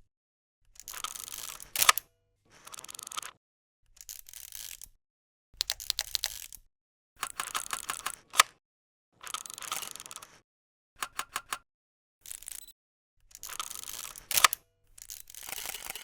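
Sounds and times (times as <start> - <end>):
camera shutter clicking: 13.4 - 14.6.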